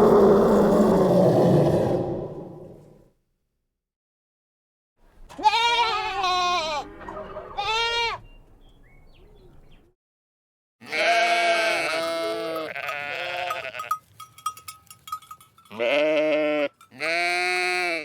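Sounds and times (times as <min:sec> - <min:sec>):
sheep bleating: 0:05.3 - 0:06.9, 0:07.6 - 0:08.2, 0:10.8 - 0:14.0, 0:15.7 - 0:18.0.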